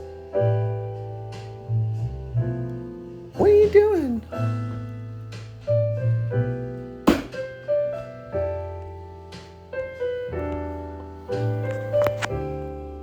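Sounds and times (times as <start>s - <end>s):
piano music: 0.0s - 13.0s.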